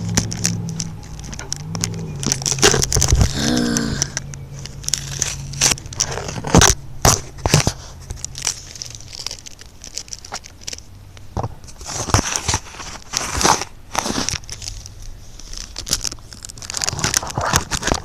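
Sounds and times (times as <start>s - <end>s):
tape crinkling and rustling: 0.0s - 18.0s.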